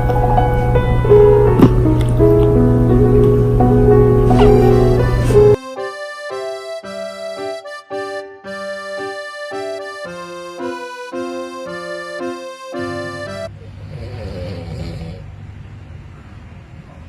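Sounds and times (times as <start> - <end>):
background music with held chords: 0.0 - 13.5
pet snoring: 13.5 - 15.3.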